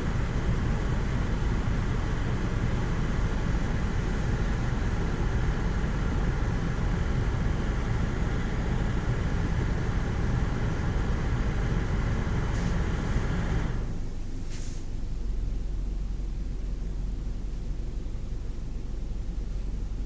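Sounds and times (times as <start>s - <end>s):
car wash machine rumbling: 0.0s - 14.4s.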